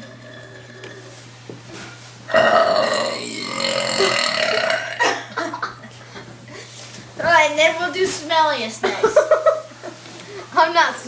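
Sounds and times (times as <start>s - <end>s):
person burping loudly: 0.0s - 1.1s, 2.3s - 5.3s.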